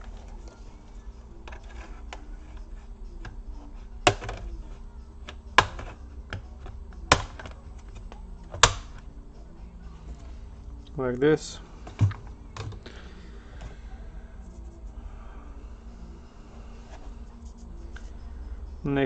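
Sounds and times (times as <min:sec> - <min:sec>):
plastic clips snapping: 0:05.3 - 0:09.0.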